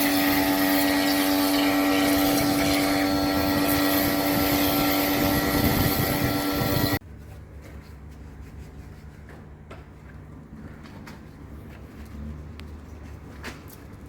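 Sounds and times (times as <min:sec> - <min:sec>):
machine motor whining: 0:00.0 - 0:07.0
low hum with faint ticks: 0:09.7 - 0:14.0.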